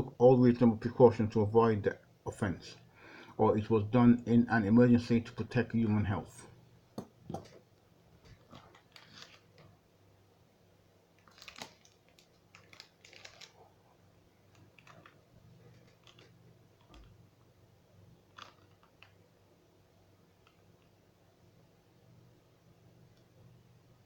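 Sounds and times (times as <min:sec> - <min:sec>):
faint low hum: 0:00.0 - 0:24.0
soft clicks and rustles: 0:07.0 - 0:09.8, 0:11.1 - 0:17.4, 0:18.1 - 0:19.3, 0:20.3 - 0:21.0.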